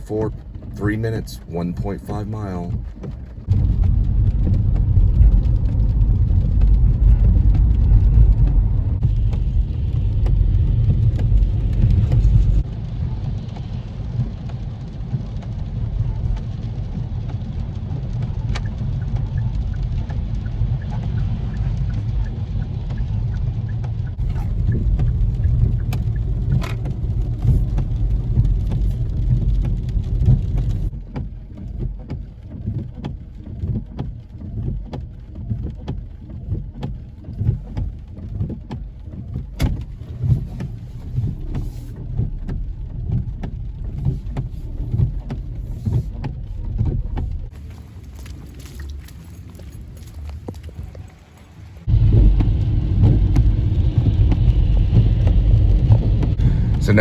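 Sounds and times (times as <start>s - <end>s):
car road and engine rumble: 0.0s - 57.0s.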